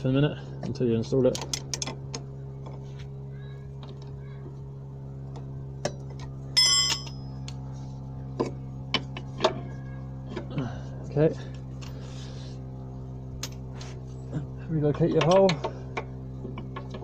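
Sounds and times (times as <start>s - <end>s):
steady low hum: 0.0s - 17.0s
metal tools clinking: 6.6s - 7.3s
bright metallic ring: 6.6s - 7.4s.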